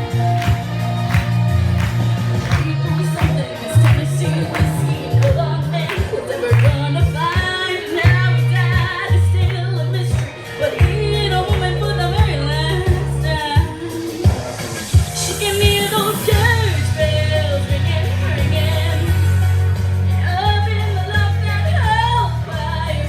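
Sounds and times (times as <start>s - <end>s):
bass and drums accompaniment: 0.0s - 23.0s
girl singing country song: 2.6s - 13.9s.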